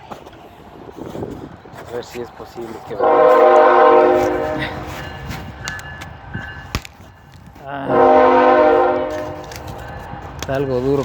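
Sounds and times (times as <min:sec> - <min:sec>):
train air horn blasts: 0:03.0 - 0:05.0, 0:07.8 - 0:09.8.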